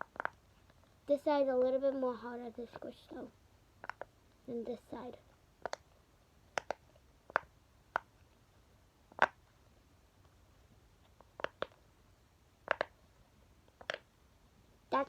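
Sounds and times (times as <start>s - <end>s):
pop-it bubbles popping: 12.7s - 12.9s.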